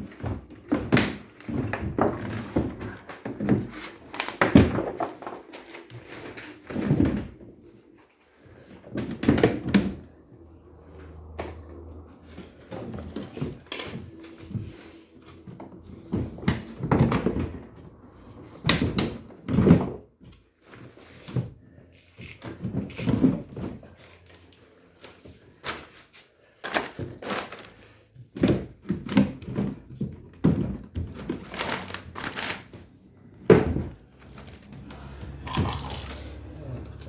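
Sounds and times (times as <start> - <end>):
squeaks: 13.1 - 14.9, 15.8 - 17.4, 19.2 - 19.6.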